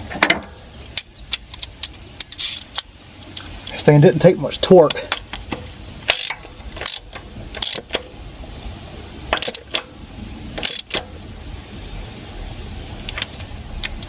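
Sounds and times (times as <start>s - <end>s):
metallic clicks of hand tools: 0.2s - 3.8s, 4.7s - 8.1s, 9.3s - 9.9s, 10.6s - 11.1s.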